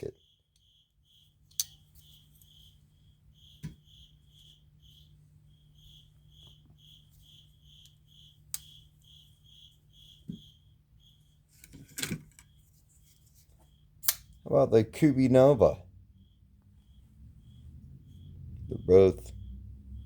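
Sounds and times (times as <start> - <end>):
cricket chirping: 0.0 - 20.0.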